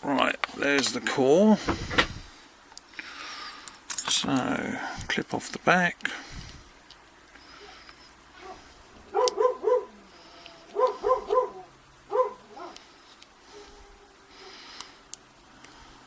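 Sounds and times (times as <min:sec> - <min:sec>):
dog barking: 0:08.4 - 0:10.1, 0:10.7 - 0:12.8.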